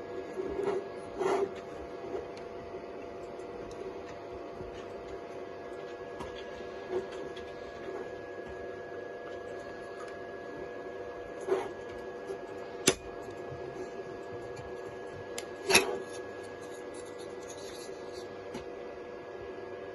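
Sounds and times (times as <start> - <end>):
printer motor hum: 0.0 - 19.9.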